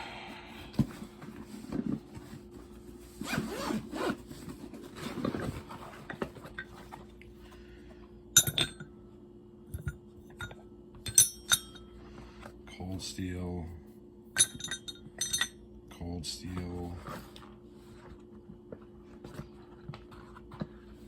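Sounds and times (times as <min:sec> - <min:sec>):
tools rubbing and scraping: 0:01.2 - 0:07.0.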